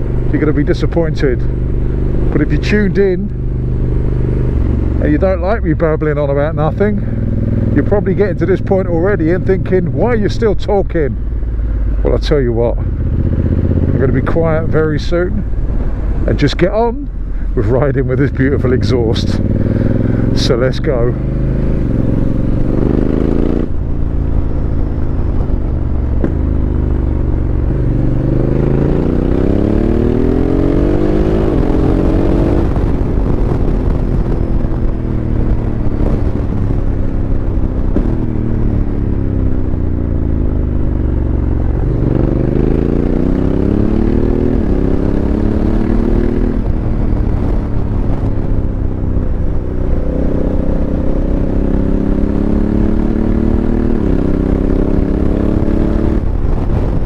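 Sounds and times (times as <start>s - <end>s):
motorcycle engine accelerating: 0.0s - 57.0s
wind noise on microphone: 18.6s - 57.0s.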